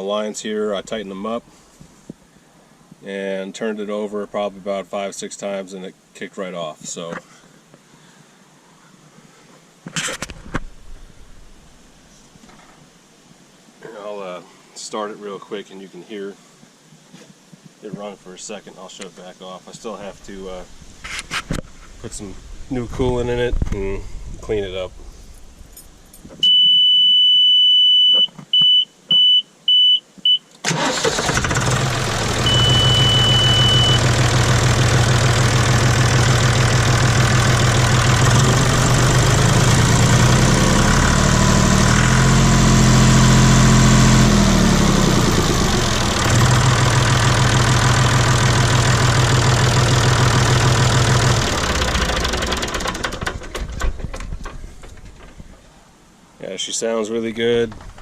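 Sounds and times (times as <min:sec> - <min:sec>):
electronic warning beep: 0:26.4 - 0:30.4, 0:32.4 - 0:34.2
diesel tractor engine idling: 0:30.7 - 0:53.8.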